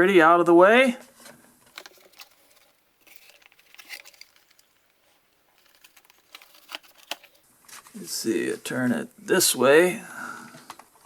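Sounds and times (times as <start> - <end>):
plastic housing clicks and rustles: 1.7 - 7.4.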